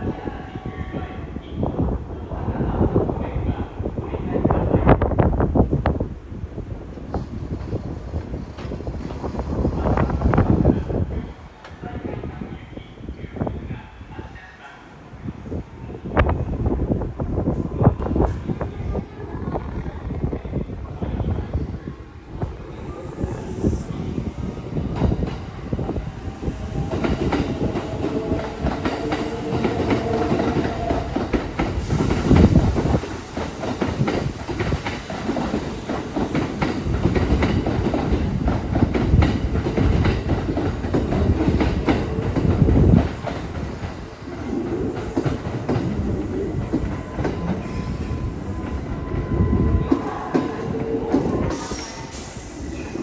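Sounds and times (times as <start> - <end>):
electric train passing: 15.2 - 53.0.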